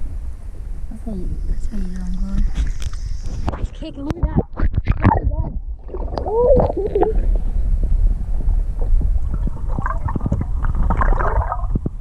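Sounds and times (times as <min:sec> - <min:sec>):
wind rumble on microphone: 0:00.0 - 0:12.0
water splashing and gurgling: 0:04.5 - 0:12.0.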